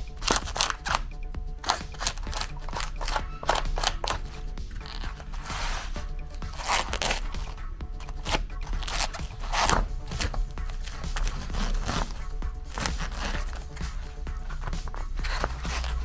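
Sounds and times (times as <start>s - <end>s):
eggs crunching: 0.0s - 16.0s.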